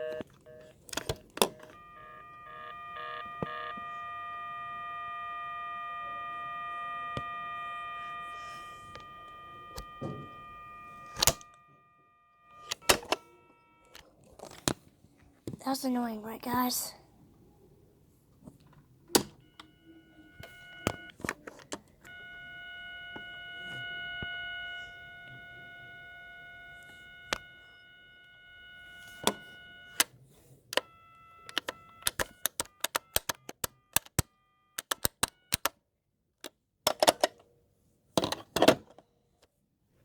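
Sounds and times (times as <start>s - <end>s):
electronic ringtone tone: 0.0s - 0.8s, 1.4s - 14.0s, 19.4s - 21.2s, 22.1s - 30.0s, 30.8s - 35.6s
short beeps at shifting pitches: 1.5s - 13.9s
sharp clicks: 31.5s - 35.8s.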